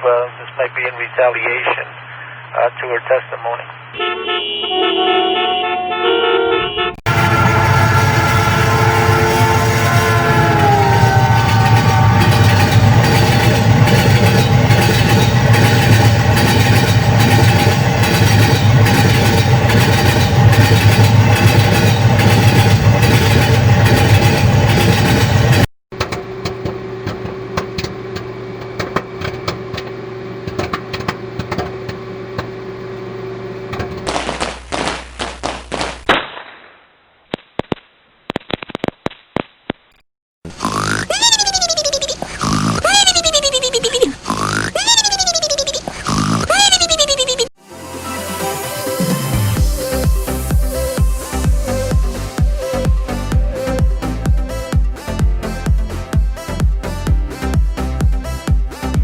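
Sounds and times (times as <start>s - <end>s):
train rumbling: 7.1s - 36.1s, 41.0s - 47.4s
sharp cracks and pops: 33.7s - 40.0s.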